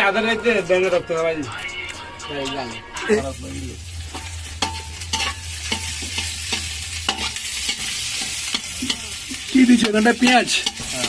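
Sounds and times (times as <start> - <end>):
food sizzling in pot: 2.9 - 11.0.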